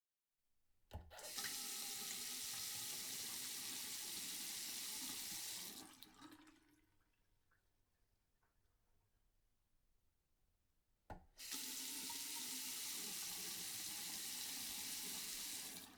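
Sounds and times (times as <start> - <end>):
water running into basin: 1.2 - 7.2, 11.4 - 15.9.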